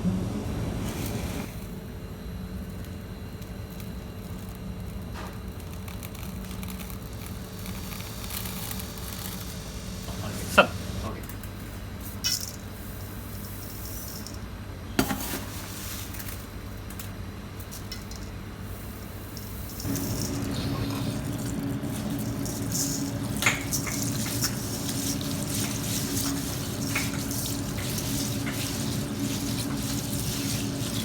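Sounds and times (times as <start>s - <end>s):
tap running with hum: 0.0s - 13.6s, 15.0s - 31.0s
water at a sink: 3.0s - 11.1s, 19.4s - 31.0s.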